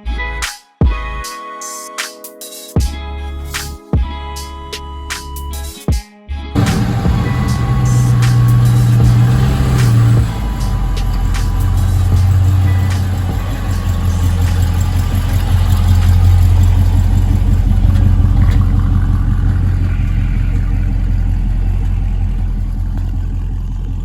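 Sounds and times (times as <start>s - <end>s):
car engine rumbling: 6.6s - 24.0s.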